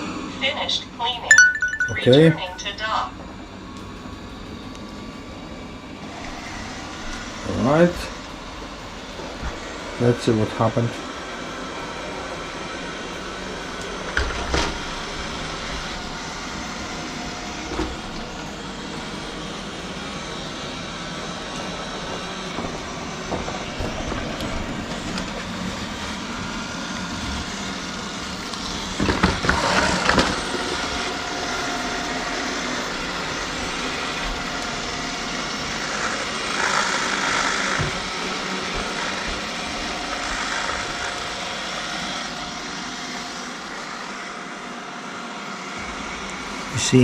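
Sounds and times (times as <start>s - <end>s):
robot vacuum motor whirring: 12.8s - 44.2s.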